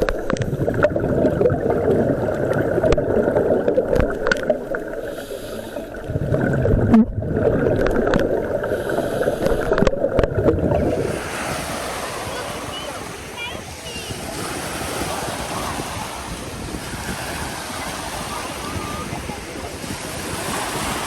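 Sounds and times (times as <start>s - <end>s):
sharp clicks underwater: 0.0s - 10.9s
underwater gurgling and rumble: 0.0s - 21.0s.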